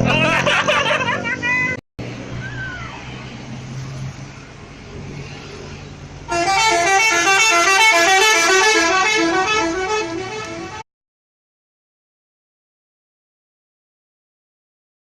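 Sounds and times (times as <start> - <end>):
traffic noise: 0.0 - 10.9
bus musical horn tune: 6.3 - 10.9.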